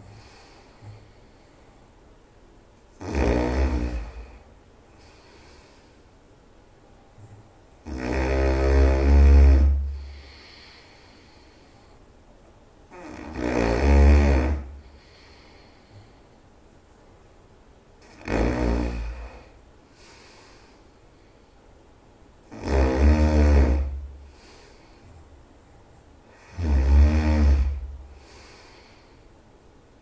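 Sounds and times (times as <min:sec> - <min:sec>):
faint breaths: 0:00.0 - 0:03.0, 0:03.9 - 0:07.9, 0:09.1 - 0:13.4, 0:14.5 - 0:17.3, 0:18.9 - 0:22.5, 0:23.7 - 0:30.0
person snoring loudly: 0:03.0 - 0:04.4, 0:07.8 - 0:10.6, 0:12.9 - 0:15.1, 0:18.0 - 0:19.6, 0:22.5 - 0:24.7, 0:26.3 - 0:28.9.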